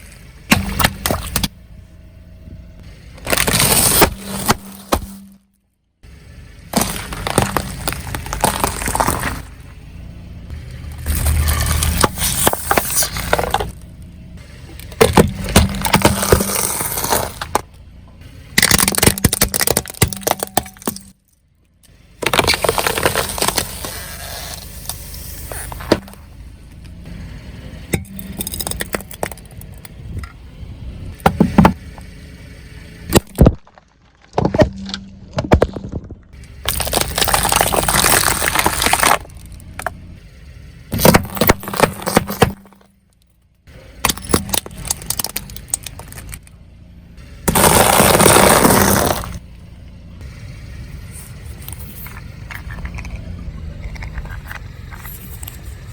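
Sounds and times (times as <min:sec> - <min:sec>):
objects crushed under car tyres: 0:00.0 - 0:01.6, 0:03.1 - 0:05.6, 0:06.6 - 0:09.8, 0:10.4 - 0:14.0, 0:14.7 - 0:17.9, 0:18.5 - 0:21.4, 0:22.2 - 0:27.1, 0:27.9 - 0:30.3, 0:31.1 - 0:32.1, 0:33.1 - 0:40.2, 0:40.9 - 0:49.5.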